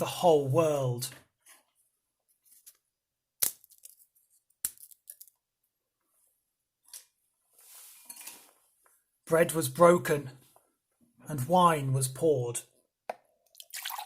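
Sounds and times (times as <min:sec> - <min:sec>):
wine pouring into cup: 0:13.4 - 0:14.0.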